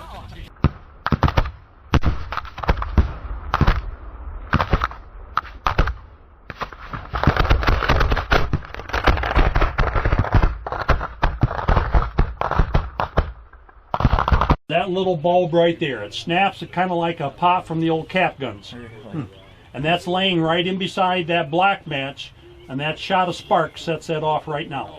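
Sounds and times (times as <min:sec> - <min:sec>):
fireworks popping and crackling: 0:00.1 - 0:14.6.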